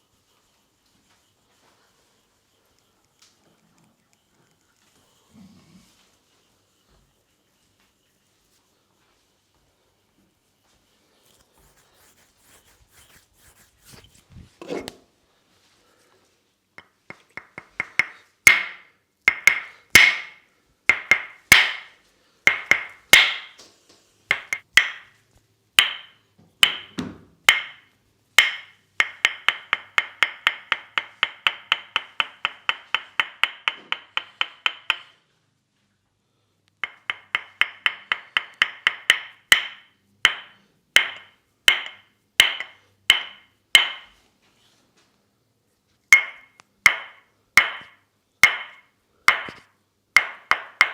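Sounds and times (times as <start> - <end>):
wooden mallet tapping wooden wedge: 11.3 - 14.2, 16.8 - 21.9, 22.5 - 23.6, 24.3 - 25.1, 25.8 - 35.1, 36.8 - 44.0, 46.1 - 49.6, 50.2 - 50.9.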